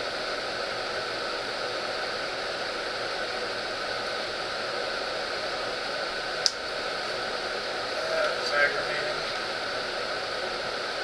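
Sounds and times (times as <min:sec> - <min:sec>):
steady background hiss: 0:00.0 - 0:11.0.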